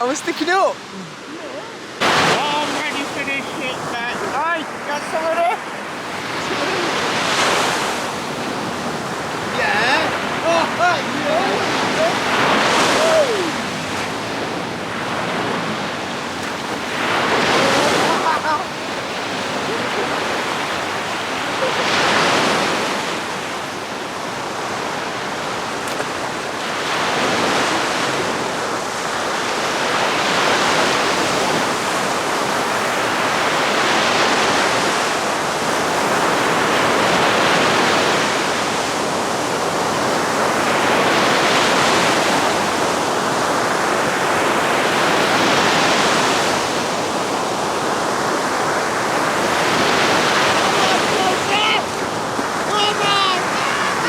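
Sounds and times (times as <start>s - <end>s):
sea waves breaking on a beach: 0.0s - 54.0s.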